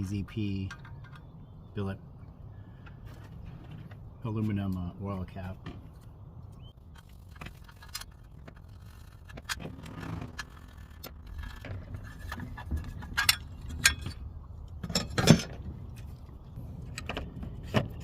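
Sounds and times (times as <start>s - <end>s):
metal tools clinking: 0.5s - 1.4s.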